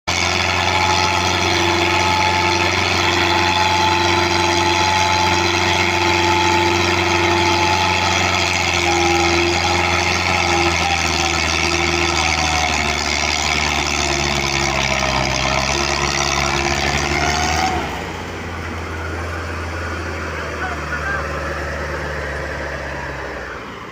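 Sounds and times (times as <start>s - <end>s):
diesel tractor engine running: 0.0s - 23.9s.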